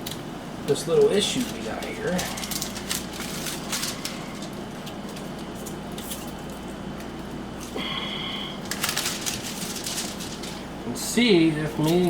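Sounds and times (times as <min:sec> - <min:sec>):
steady low hum: 0:00.0 - 0:12.0
tape rustling and rubbing: 0:01.4 - 0:06.7, 0:08.6 - 0:10.7.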